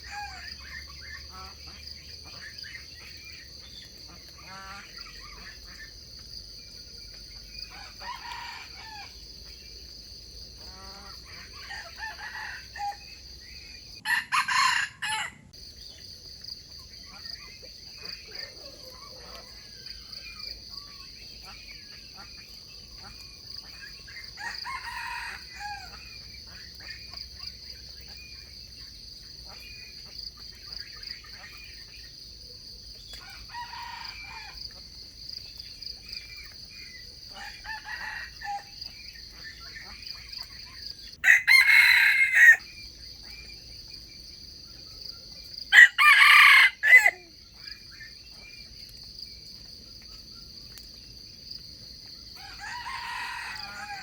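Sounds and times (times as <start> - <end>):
roosters crowing: 7.7 - 9.2, 10.7 - 13.3, 14.0 - 15.5, 24.4 - 26.0, 33.2 - 34.7, 37.3 - 38.8, 41.2 - 42.7, 45.7 - 47.4, 52.3 - 54.0.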